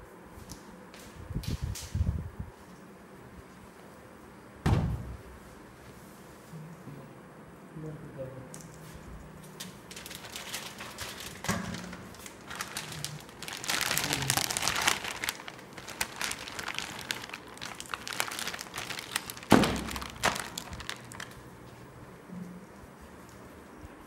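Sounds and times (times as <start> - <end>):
loud thump: 4.6 - 5.2
packaging crinkling and rustling: 9.5 - 21.5.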